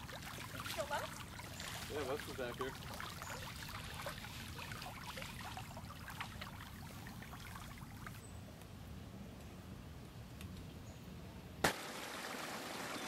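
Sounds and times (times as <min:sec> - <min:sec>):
floodwater rushing: 0:00.0 - 0:08.2, 0:11.6 - 0:13.0.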